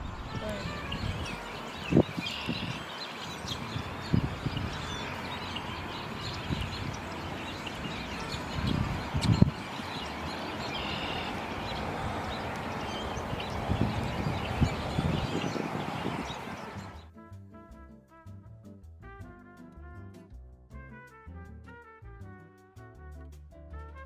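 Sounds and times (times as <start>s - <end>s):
low thumps: 0.0s - 2.2s.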